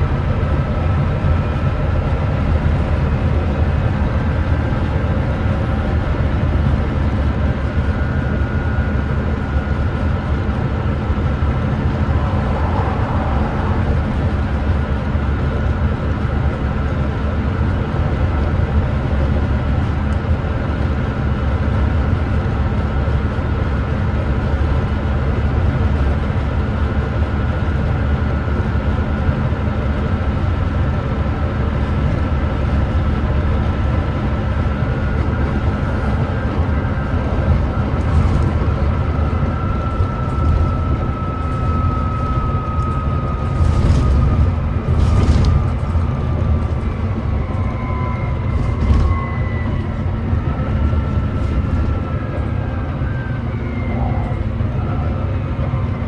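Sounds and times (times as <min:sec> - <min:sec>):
bus diesel engine cruising: 0:00.0 - 0:56.0
road noise: 0:00.0 - 0:56.0
faint high whine: 0:10.7 - 0:15.7.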